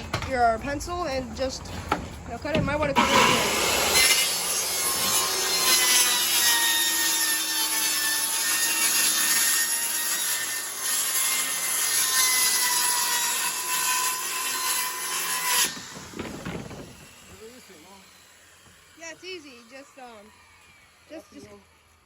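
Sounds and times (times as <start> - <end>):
saw cutting wooden board: 2.5 - 22.0.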